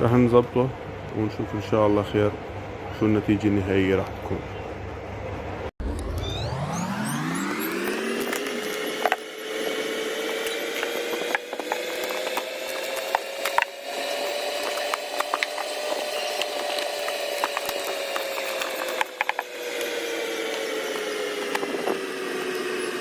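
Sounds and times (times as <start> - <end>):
small electric motor whining: 5.8 - 23.0.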